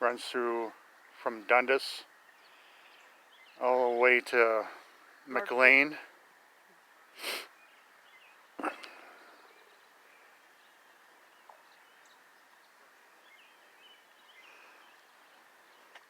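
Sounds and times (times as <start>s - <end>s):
breathy puff: 7.2s - 7.5s
faint bird chirps: 7.5s - 16.0s.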